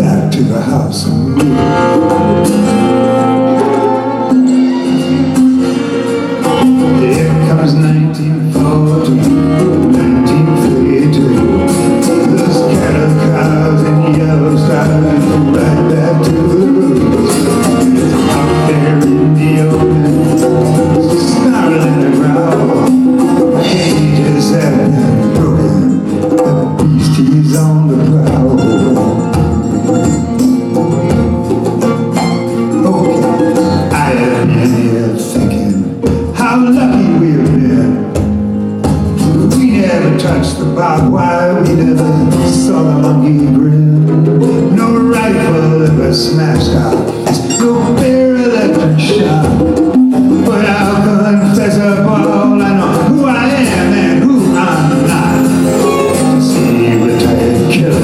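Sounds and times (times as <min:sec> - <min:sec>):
violin: 0:00.0 - 0:35.5, 0:52.7 - 0:58.0
acoustic guitars strummed and picked: 0:00.0 - 0:58.0
hand percussion: 0:00.0 - 0:58.0
mandolin: 0:00.0 - 0:58.0
djembe: 0:01.3 - 0:58.0.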